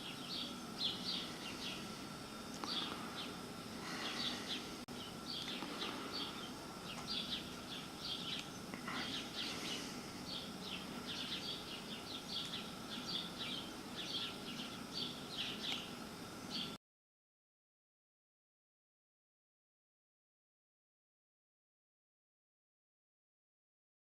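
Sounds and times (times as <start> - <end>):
birds chirping: 0.0 - 16.8
faint steady hum: 0.0 - 16.8.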